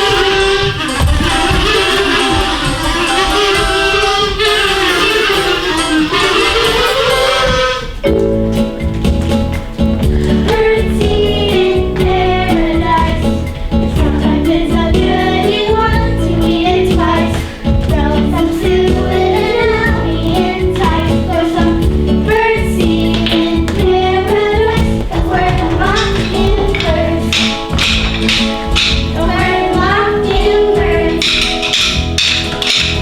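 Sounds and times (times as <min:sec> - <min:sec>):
backing track with beat: 0:00.0 - 0:33.0
person singing: 0:14.0 - 0:32.8.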